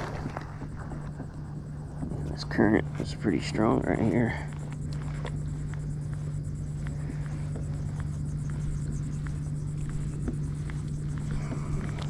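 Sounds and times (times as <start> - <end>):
low engine hum: 0.0 - 12.0
faint ticks: 4.2 - 12.0.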